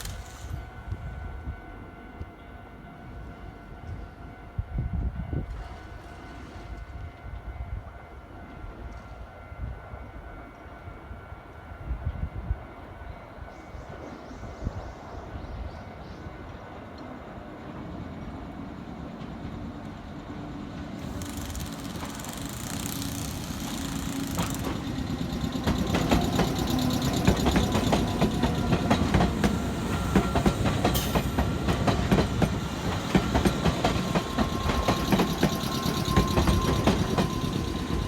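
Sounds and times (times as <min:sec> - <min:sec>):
train passing: 0:00.0 - 0:38.0
train wheels clacking over rail joints: 0:21.0 - 0:38.0.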